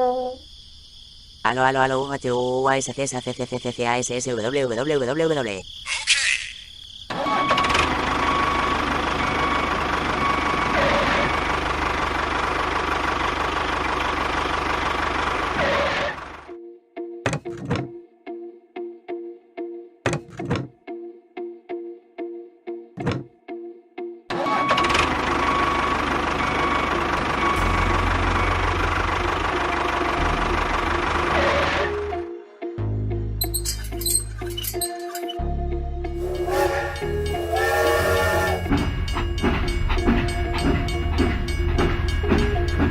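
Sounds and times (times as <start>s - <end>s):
engine idling with rapid knock: 7.8s - 16.5s, 24.6s - 31.9s.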